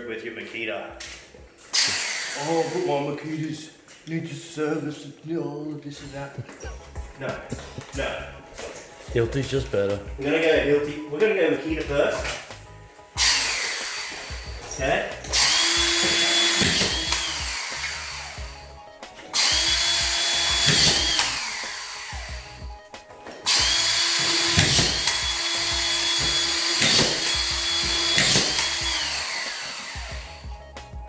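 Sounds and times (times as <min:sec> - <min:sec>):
screw gun whining: 0:01.7 - 0:03.1, 0:13.2 - 0:30.7.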